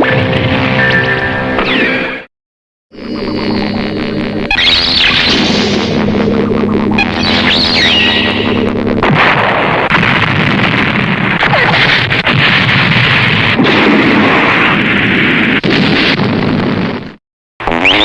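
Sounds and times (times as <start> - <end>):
explosion crash and roar: 0.0 - 1.8, 3.2 - 17.2
electronic tone: 2.9 - 10.0, 17.6 - 18.0.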